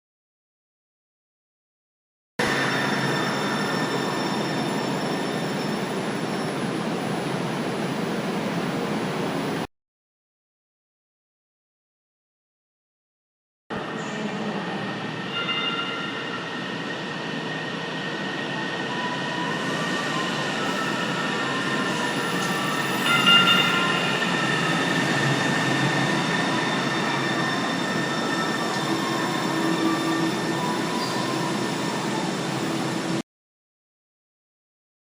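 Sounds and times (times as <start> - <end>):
light rail train wheels rumbling: 13.8 - 31.5
high whining tones: 15.1 - 32.9.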